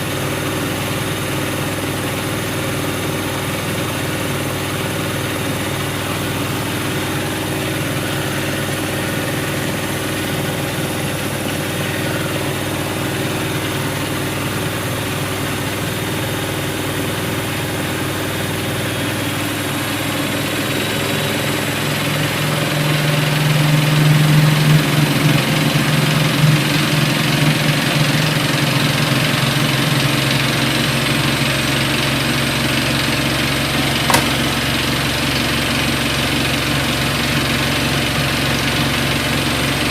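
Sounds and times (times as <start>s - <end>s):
washing machine motor humming: 0.0s - 22.7s, 33.0s - 36.1s
sharp click: 34.0s - 34.6s.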